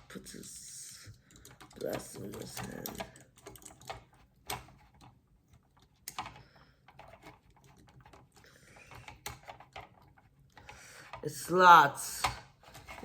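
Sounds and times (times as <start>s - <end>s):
soft handling noise: 12.2s - 13.0s.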